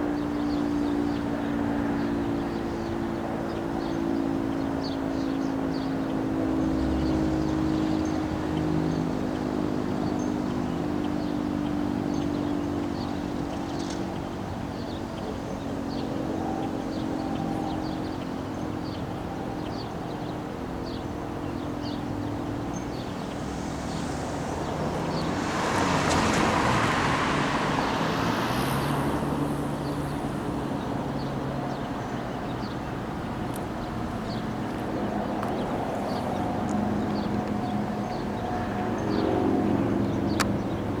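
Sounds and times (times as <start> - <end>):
street traffic: 0.0 - 41.0
car passing: 21.8 - 41.0.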